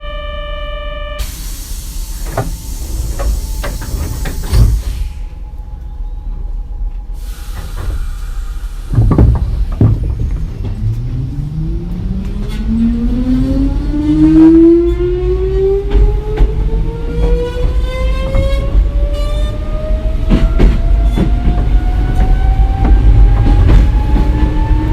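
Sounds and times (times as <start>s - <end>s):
hissing air: 1.2s - 5.6s, 7.1s - 9.1s
sharp clunks: 8.9s - 10.8s.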